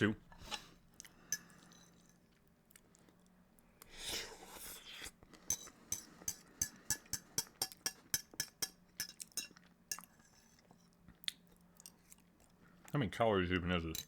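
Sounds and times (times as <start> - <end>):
utensil clinking against bowl: 5.5 - 10.4.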